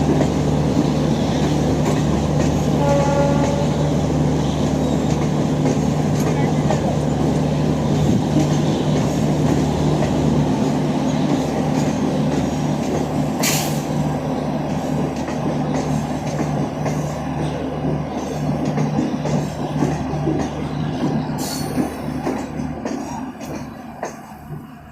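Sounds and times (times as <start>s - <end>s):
train wheels rumbling on rails: 0.0s - 24.9s
short hiss: 13.4s - 13.9s.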